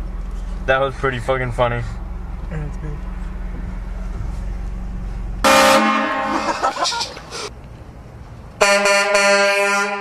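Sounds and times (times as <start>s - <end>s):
vehicle hum: 0.0s - 10.0s
loud train horn blast: 5.4s - 6.4s, 8.6s - 10.0s.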